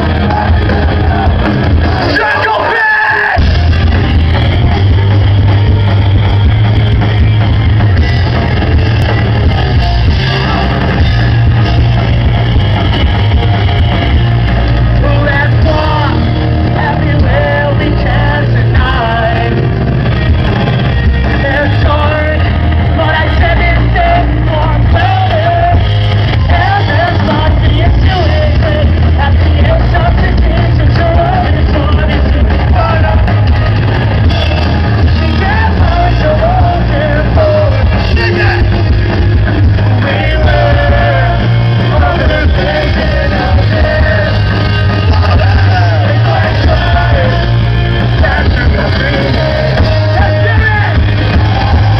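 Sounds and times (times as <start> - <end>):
rock band playing live: 0.0 - 51.9
person singing: 14.7 - 19.8, 21.2 - 33.5, 39.8 - 51.9.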